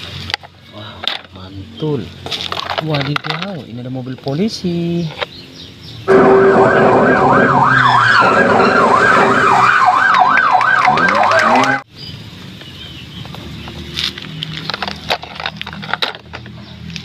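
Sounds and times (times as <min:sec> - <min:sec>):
toy police car siren wailing: 0:06.2 - 0:11.8.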